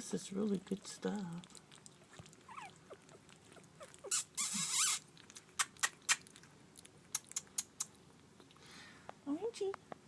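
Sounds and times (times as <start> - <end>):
puppy snuffling: 1.0 - 8.6
puppies squeaking: 1.8 - 6.4
wet smacking clicks: 5.2 - 8.6.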